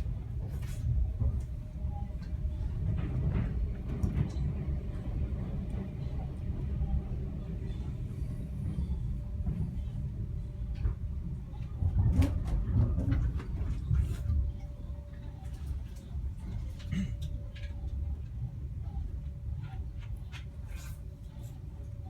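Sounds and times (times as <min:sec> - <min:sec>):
train wheels rumbling on rails: 0:00.0 - 0:21.8.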